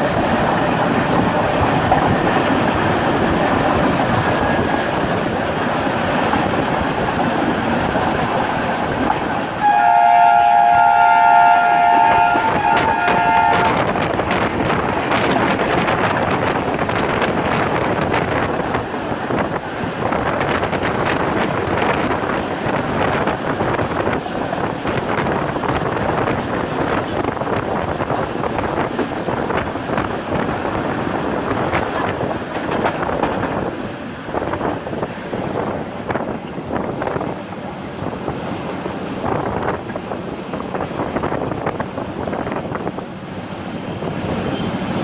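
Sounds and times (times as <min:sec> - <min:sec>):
train rolling noise: 0:00.0 - 0:45.0
train horn: 0:09.5 - 0:14.1.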